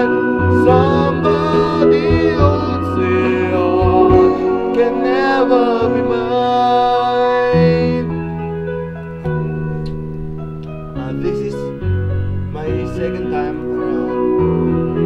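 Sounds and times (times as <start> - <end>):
person singing with vibrato: 0.0 - 8.5
keyboard and guitar chords: 0.0 - 15.0.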